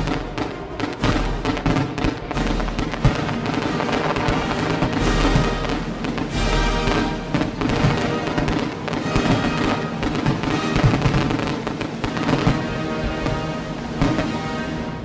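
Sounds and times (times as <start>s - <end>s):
fireworks bangs and crackles: 0.0s - 15.0s
music: 0.0s - 15.0s.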